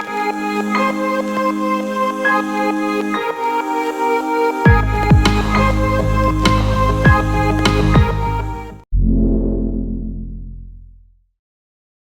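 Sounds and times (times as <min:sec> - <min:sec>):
electronic music with synth notes: 0:00.0 - 0:10.9
deep falling bass sweep: 0:04.7 - 0:11.2
heavy bass line: 0:04.7 - 0:11.2.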